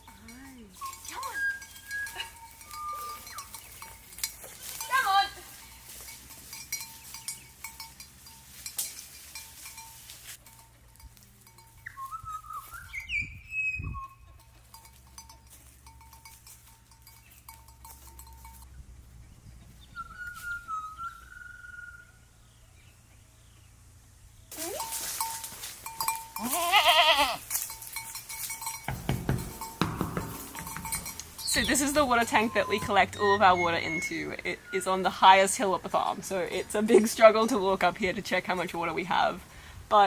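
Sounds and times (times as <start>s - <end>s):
animal bell clinking: 0.0s - 12.2s, 14.1s - 18.8s, 24.6s - 35.6s
short high calls: 0.6s - 3.9s, 24.5s - 25.6s, 30.6s - 35.1s.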